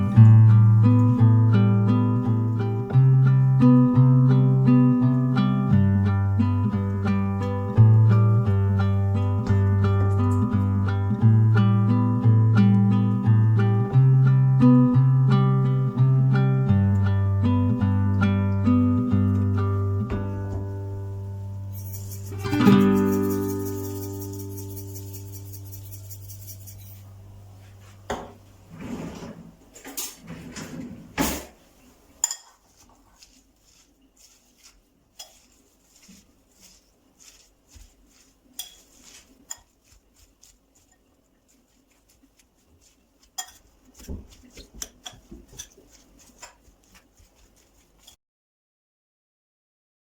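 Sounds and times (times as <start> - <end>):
dishes and cutlery clinking: 29.8 - 31.6, 32.2 - 33.4, 35.2 - 36.1, 37.3 - 41.1, 43.2 - 47.0.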